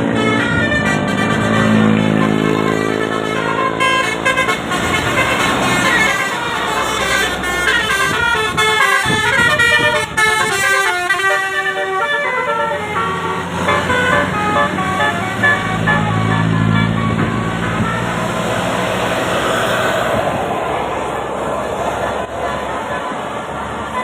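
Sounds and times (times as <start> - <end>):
musical air horn melody: 0.0 - 18.6.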